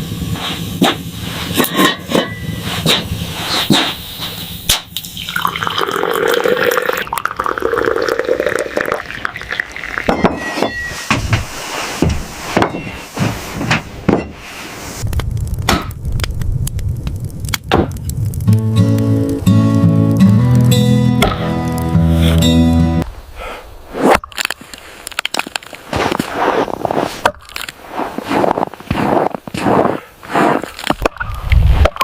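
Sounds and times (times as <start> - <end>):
water pouring and splashing: 5.0 - 12.0.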